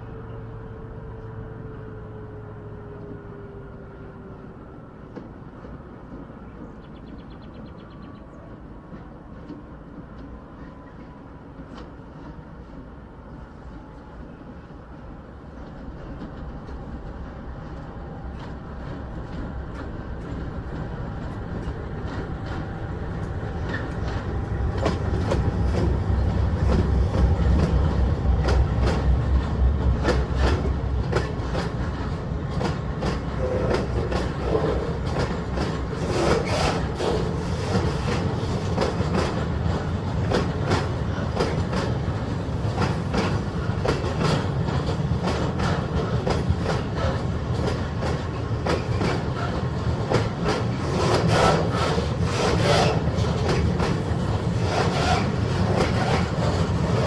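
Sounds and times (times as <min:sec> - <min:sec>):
train rumble: 0:00.0 - 0:57.0
wheels clattering over rail joints: 0:17.8 - 0:57.0.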